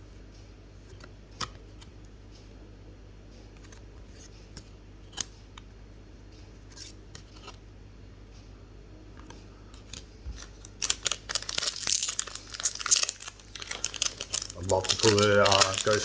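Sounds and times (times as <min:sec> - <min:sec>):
trading cards and wrappers handled: 0:09.8 - 0:16.0.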